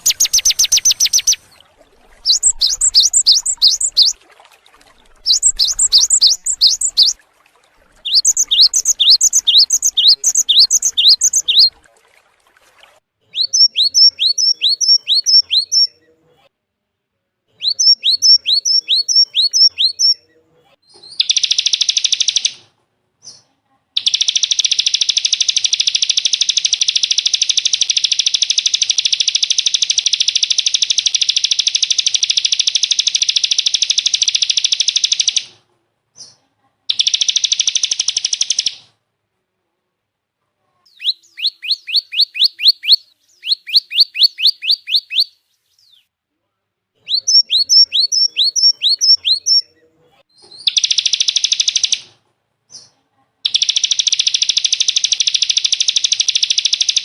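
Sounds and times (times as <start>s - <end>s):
sharp sliding bird notes: 0.0s - 1.6s, 2.2s - 4.2s, 5.2s - 7.2s, 8.0s - 11.7s
songbird trilling: 0.0s - 7.2s, 7.8s - 11.8s, 13.3s - 16.0s, 17.6s - 20.2s, 24.0s - 35.5s, 36.9s - 38.8s, 40.9s - 46.0s, 47.0s - 49.7s, 50.6s - 52.0s, 53.5s - 57.0s.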